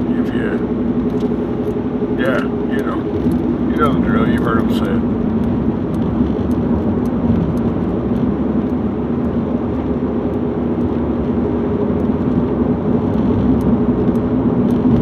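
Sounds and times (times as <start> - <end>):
vehicle road noise: 0.0 - 15.0.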